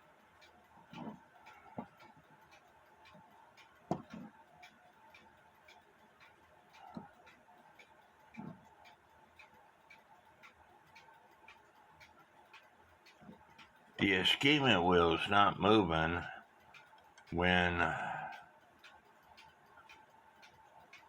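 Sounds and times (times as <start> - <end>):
clock ticking: 0.0 - 21.0
knocks and taps of handling: 3.9 - 4.3.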